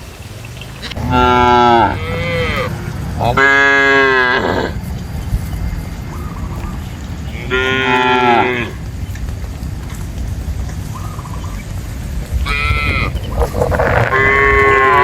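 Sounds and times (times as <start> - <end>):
cow mooing: 0.8 - 4.8, 7.3 - 8.8, 12.5 - 15.0.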